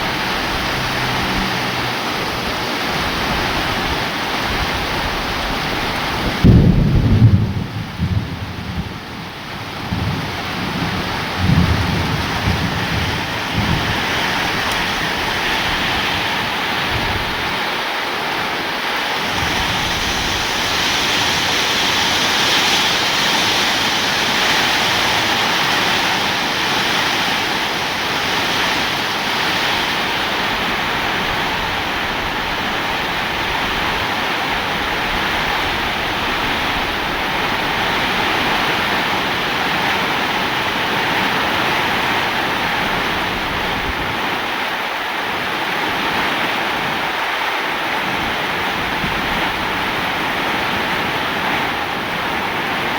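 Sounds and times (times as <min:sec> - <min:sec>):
heavy rain: 0:00.0 - 0:52.9
rumbles of thunder: 0:06.0 - 0:15.8.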